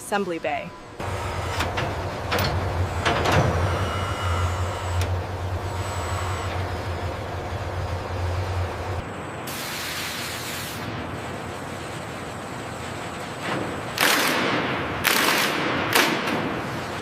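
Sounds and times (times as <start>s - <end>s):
machinery noise: 0.0s - 14.0s
low hum: 0.6s - 9.5s
loud bursts of hissing: 9.5s - 10.9s.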